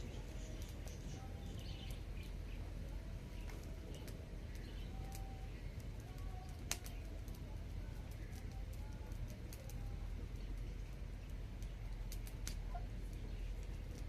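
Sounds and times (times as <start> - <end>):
bird chirps and calls: 0.0 - 2.7
low background noise: 0.0 - 14.0.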